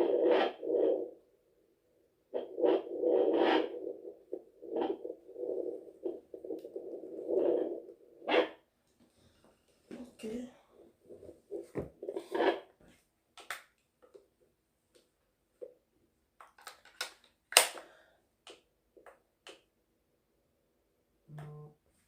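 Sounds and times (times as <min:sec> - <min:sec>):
fetal doppler clicks and crackles: 0:00.0 - 0:08.7.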